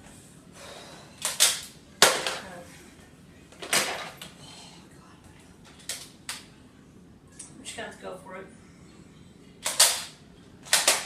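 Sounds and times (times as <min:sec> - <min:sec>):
plastic toy blaster clacks: 0:10.7 - 0:11.0.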